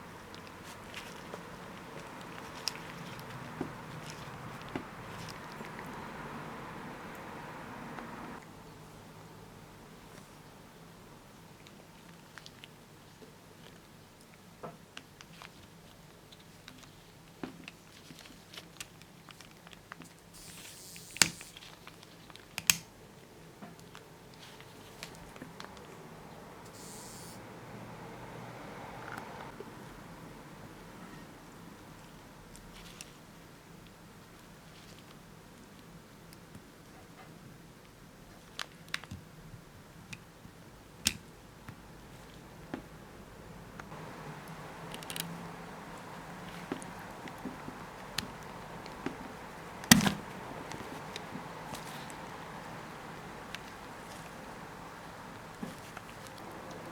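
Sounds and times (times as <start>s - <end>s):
brief hiss: 20.4s - 21.6s, 26.6s - 27.5s.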